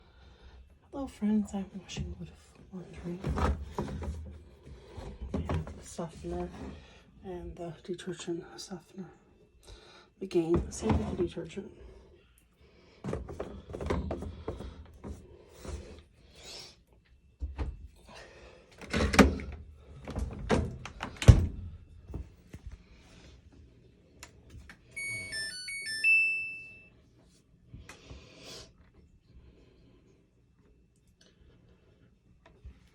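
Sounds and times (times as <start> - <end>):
washing machine drawer and door clunks: 18.8 - 21.7
electronic beep tune: 25.0 - 26.9.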